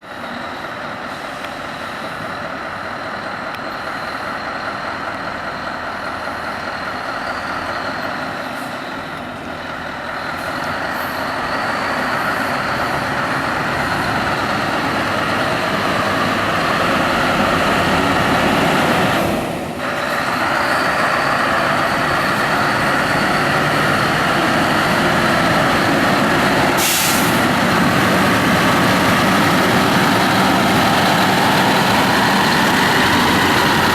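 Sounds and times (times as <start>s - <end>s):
truck diesel engine running: 0.0s - 33.9s
short hiss: 26.8s - 27.4s.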